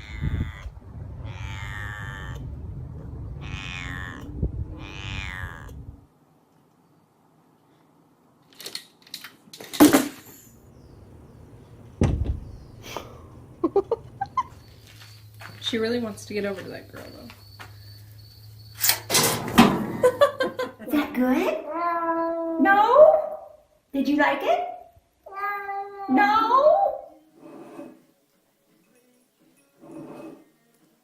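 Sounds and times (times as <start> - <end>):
cat meowing: 0.0 - 2.5, 3.3 - 6.0, 21.6 - 22.6, 25.2 - 26.4
knocks and thumps: 11.9 - 12.7, 19.1 - 20.1.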